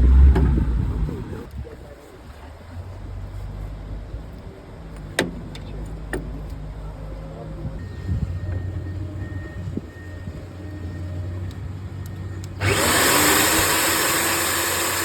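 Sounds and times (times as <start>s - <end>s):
engine running: 7.8s - 15.0s.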